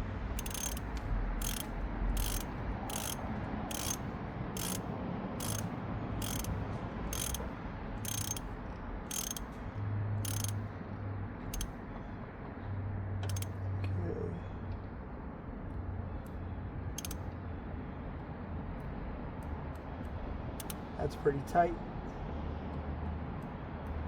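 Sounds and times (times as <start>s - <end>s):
ratchet wrench clicking: 0.3s - 9.6s, 10.2s - 10.6s, 11.4s - 11.8s, 13.2s - 13.6s, 17.0s - 17.2s, 20.6s - 20.9s.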